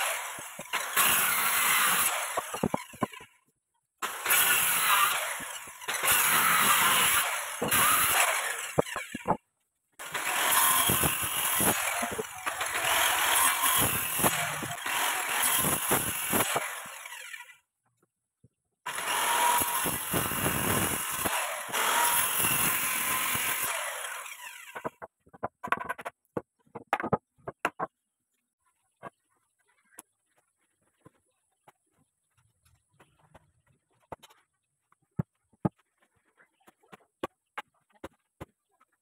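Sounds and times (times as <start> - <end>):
power tool cutting wood: 0.0 - 3.3, 4.0 - 9.4, 10.0 - 17.6, 18.9 - 25.1.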